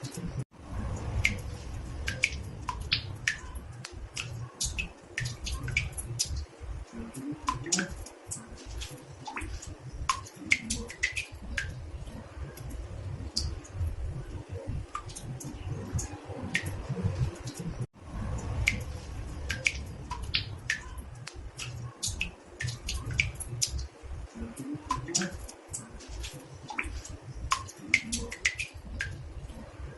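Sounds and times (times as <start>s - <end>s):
low steady rumble: 0.0s - 7.7s, 10.8s - 26.2s
water drops plinking into bathtub: 0.9s - 17.7s, 18.4s - 29.2s.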